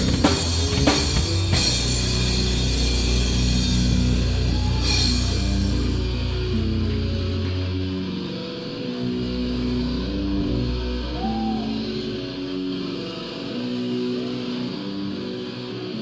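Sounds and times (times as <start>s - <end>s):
rock band guitars and bass: 0.0s - 16.0s.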